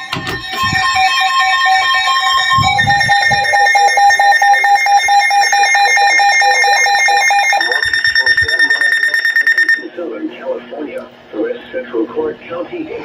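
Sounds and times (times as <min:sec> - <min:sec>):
harsh two-tone alarm: 0:00.0 - 0:09.9.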